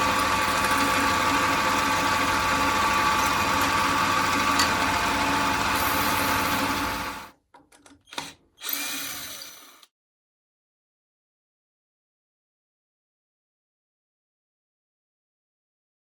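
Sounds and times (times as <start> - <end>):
electric power tool running: 0.0 - 7.3, 8.2 - 9.9.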